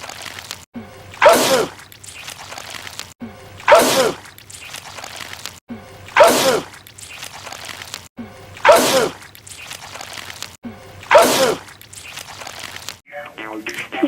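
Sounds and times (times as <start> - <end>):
man sneezing: 1.2 - 1.8, 3.7 - 4.2, 6.2 - 6.7, 8.6 - 9.2, 11.1 - 11.6.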